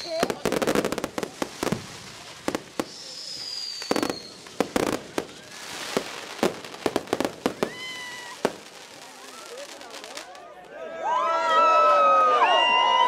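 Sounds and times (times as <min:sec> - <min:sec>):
descending firework whistle: 0:00.0 - 0:00.8, 0:02.6 - 0:06.1, 0:07.4 - 0:08.6
crackling hiss: 0:00.0 - 0:10.5
fireworks bangs and cracks: 0:00.0 - 0:10.7.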